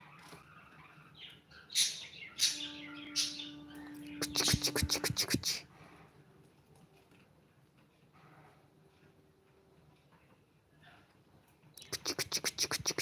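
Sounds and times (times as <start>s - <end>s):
bird chirping: 0.9s - 5.6s.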